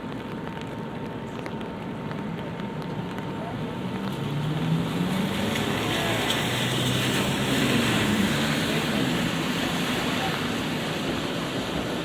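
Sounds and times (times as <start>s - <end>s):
light rain falling: 0.0s - 12.0s
tyres hissing on wet road: 0.0s - 12.0s
vehicle engine passing: 3.5s - 11.7s.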